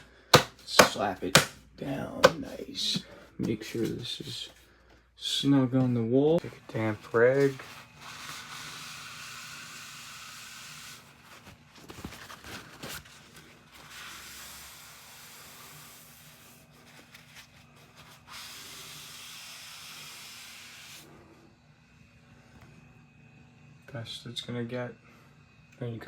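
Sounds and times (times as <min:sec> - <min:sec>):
damp rag wiping wall: 0:05.8 - 0:11.4.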